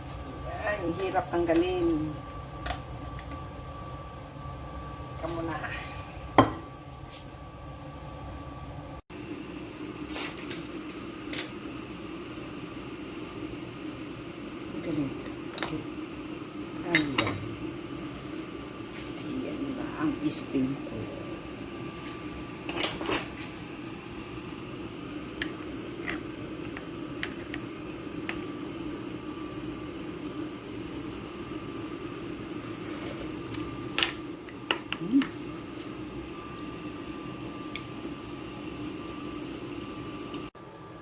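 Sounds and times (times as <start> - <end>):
dishes and utensils clinking: 22.7 - 23.5.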